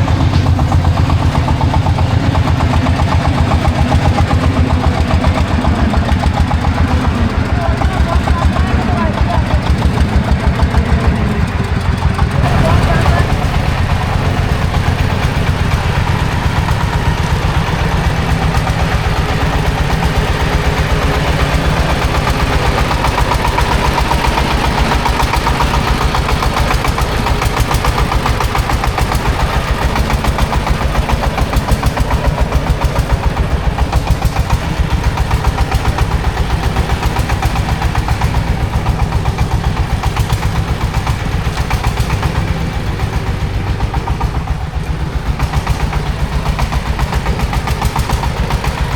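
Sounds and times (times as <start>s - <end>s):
engine idling with chugging beat: 0.0s - 48.9s.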